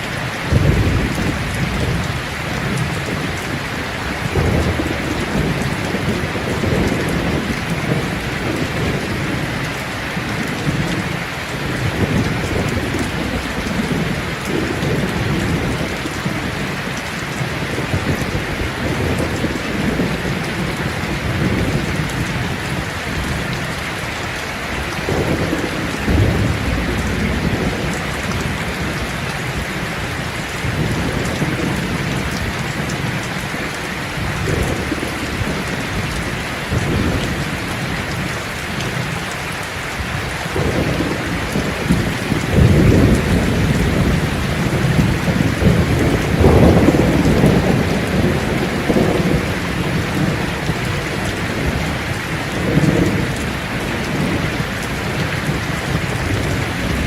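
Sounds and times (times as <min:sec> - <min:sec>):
heavy rain: 0:00.0 - 0:57.0
thunder rolls: 0:25.0 - 0:30.0, 0:40.5 - 0:57.0.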